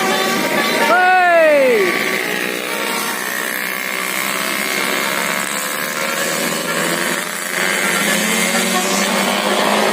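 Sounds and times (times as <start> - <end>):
diesel bus engine passing: 0.0 - 9.9.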